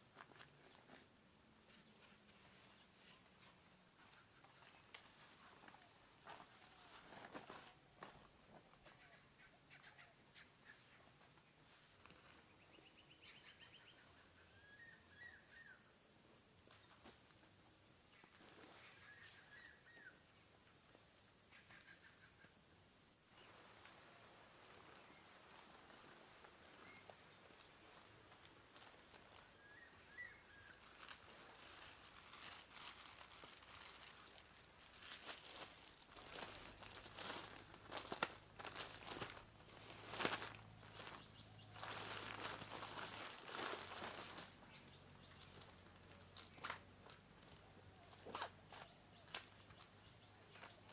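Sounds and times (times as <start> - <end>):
faint birdsong: 0.0 - 50.9
soft rustling: 30.2 - 44.7.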